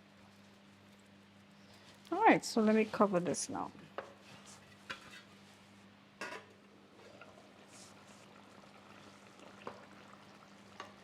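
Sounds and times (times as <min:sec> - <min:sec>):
sauce bubbling: 0:06.6 - 0:11.0.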